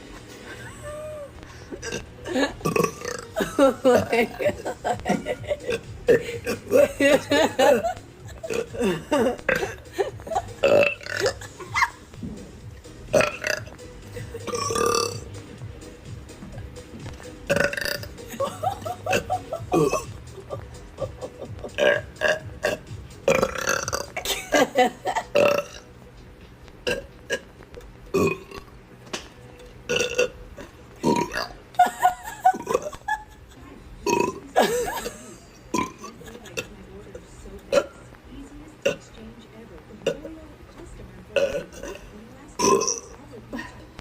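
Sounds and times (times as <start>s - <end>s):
person burping: 1.7s - 4.2s, 5.6s - 7.0s, 7.6s - 11.6s, 13.1s - 15.3s, 17.5s - 18.2s, 18.8s - 20.2s, 21.6s - 24.3s, 25.3s - 25.8s, 26.8s - 27.5s, 28.1s - 28.6s, 29.9s - 31.6s, 32.6s - 33.0s, 34.0s - 36.7s, 37.7s - 38.0s, 41.4s - 43.1s.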